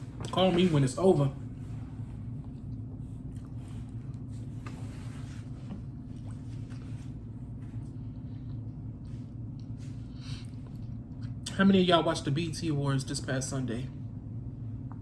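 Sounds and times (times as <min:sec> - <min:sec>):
low hum: 0:00.0 - 0:15.0
person chewing food: 0:02.3 - 0:04.7.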